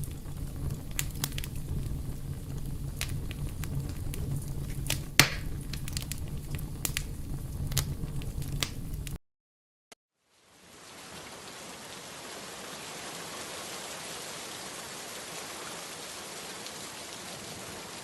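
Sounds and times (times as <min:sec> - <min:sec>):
low fire rumble: 0:00.0 - 0:09.2
wood fire crackling and popping: 0:00.0 - 0:09.2.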